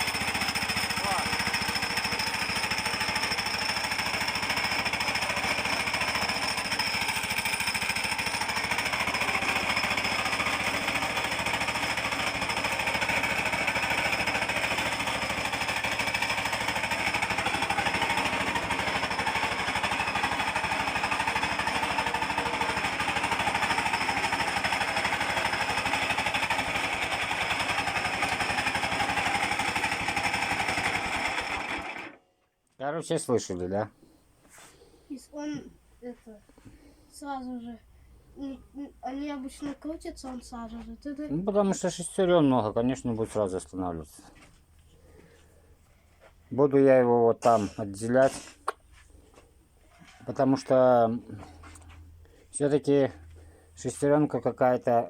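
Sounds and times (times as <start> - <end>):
gear reducer humming and rattling: 0.0 - 32.2.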